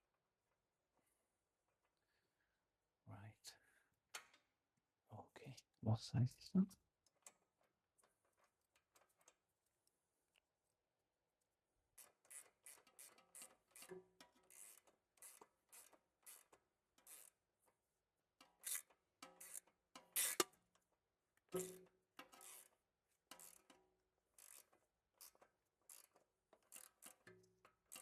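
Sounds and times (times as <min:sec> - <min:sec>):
hand tools scraping and clicking: 0:12.0 - 0:17.4, 0:18.4 - 0:20.6, 0:21.5 - 0:28.0.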